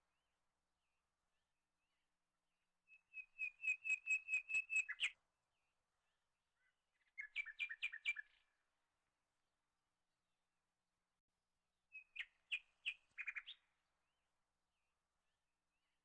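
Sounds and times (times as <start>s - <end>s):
small bird chirping rapidly: 3.1s - 5.1s, 7.1s - 8.4s, 12.0s - 13.6s.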